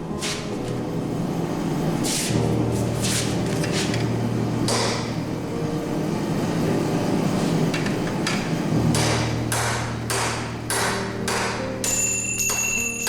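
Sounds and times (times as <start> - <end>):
steady low hum: 0.0 - 12.9
hammer striking steel on anvil: 4.7 - 5.2, 8.2 - 13.0.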